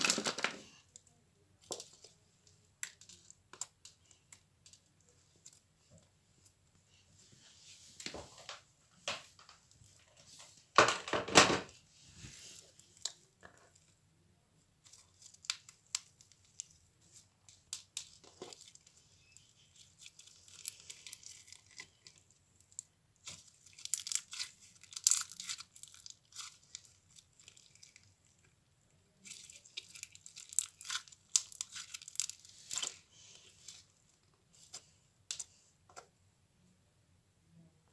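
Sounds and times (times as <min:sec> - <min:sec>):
slime crackling and tearing: 0:17.6 - 0:28.4, 0:29.2 - 0:33.0.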